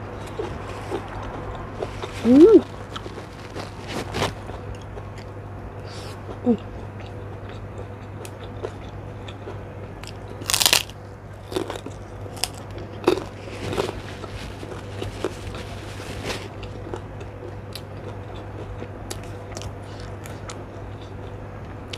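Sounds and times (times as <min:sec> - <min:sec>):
crunchy bites and chewing: 0:06.9 - 0:21.9.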